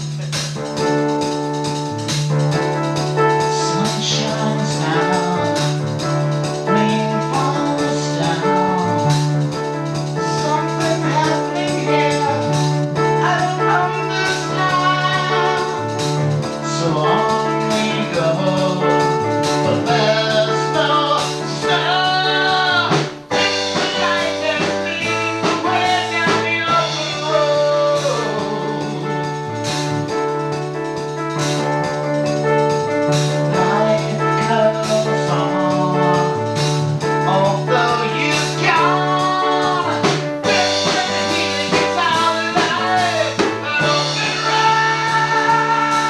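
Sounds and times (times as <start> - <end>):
blues band playing: 0.0 - 46.0
drum kit: 0.0 - 46.0
person singing: 3.5 - 5.8, 6.6 - 9.1, 10.2 - 29.5, 33.5 - 46.0
guitar: 7.8 - 46.0.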